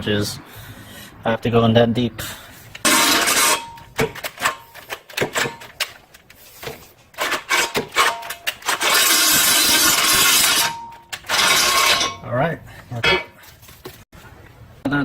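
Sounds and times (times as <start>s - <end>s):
power drill boring through metal: 8.7s - 12.2s.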